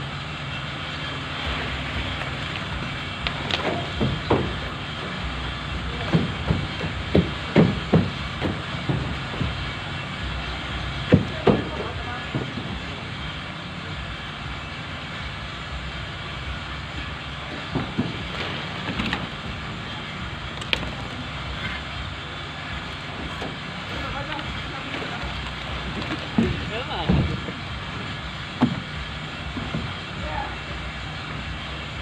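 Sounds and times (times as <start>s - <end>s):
knocks and clatter: 1.4s - 13.4s, 16.7s - 30.2s.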